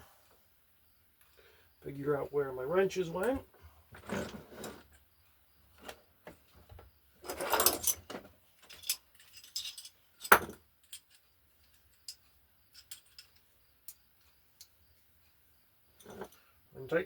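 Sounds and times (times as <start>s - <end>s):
metal wrenches clinking: 7.2s - 13.4s, 16.0s - 16.4s.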